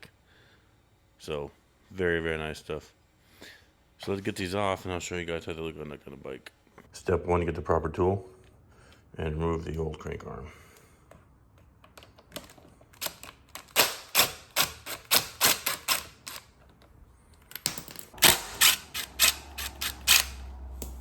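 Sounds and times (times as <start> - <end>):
hand tool metallic clicks: 17.5 - 21.0
low hum: 18.2 - 21.0.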